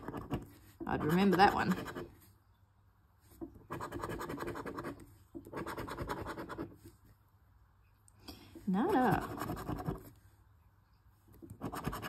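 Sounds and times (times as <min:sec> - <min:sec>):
scratching lottery ticket: 0:00.0 - 0:02.2, 0:03.6 - 0:06.9, 0:08.8 - 0:10.2, 0:11.5 - 0:12.0.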